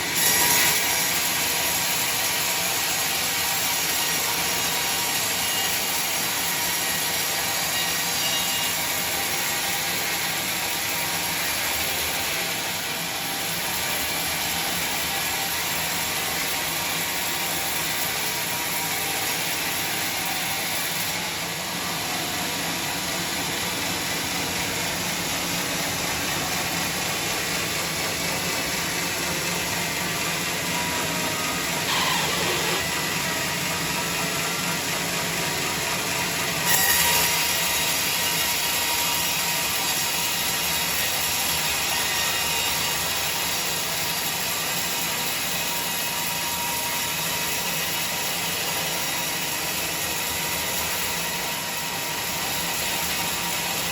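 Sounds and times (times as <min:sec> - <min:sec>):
sawmill machinery running: 0:00.0 - 0:53.9
brief falling squeal: 0:31.8 - 0:32.9.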